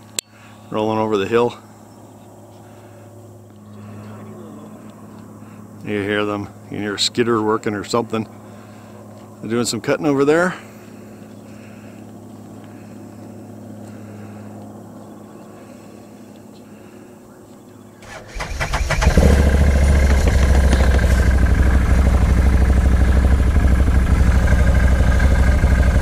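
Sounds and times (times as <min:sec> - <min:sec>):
distant machinery hum: 0:00.0 - 0:26.0
atv engine starting and running: 0:18.0 - 0:26.0.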